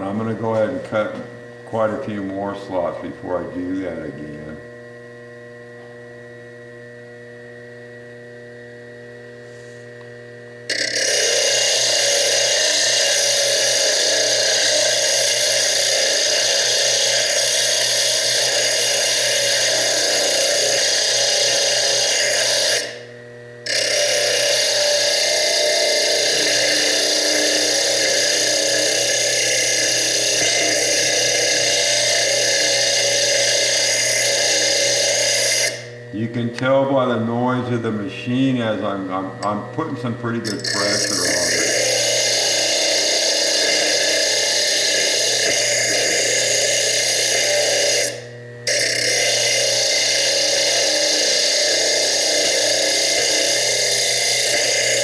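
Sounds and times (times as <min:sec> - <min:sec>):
lathe motor humming: 0:00.0 - 0:55.0
high-pitched grinding of disc on stone: 0:10.7 - 0:55.0.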